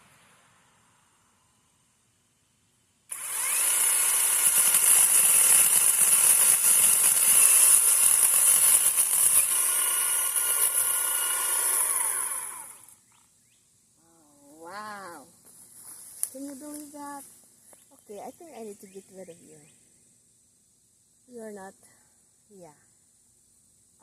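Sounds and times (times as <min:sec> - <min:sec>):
chainsaw cutting tree: 0:03.1 - 0:13.0.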